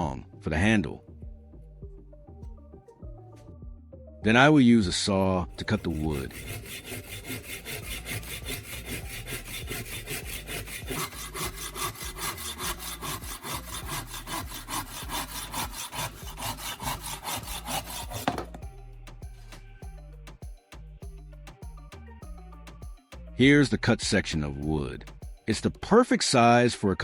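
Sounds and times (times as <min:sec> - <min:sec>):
saw cutting wood: 0:05.4 - 0:19.8.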